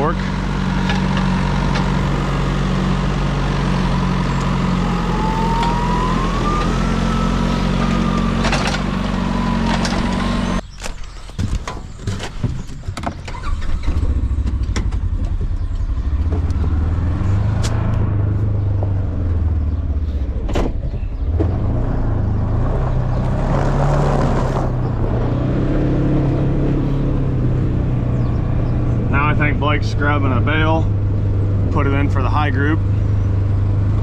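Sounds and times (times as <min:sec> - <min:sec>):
loader engine running: 0:00.0 - 0:34.0
rising whine: 0:01.0 - 0:10.6.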